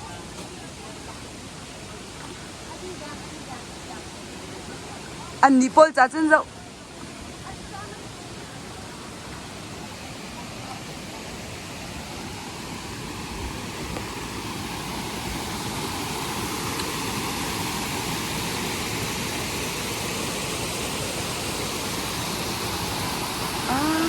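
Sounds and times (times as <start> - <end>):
steady rushing noise: 0.0 - 24.0.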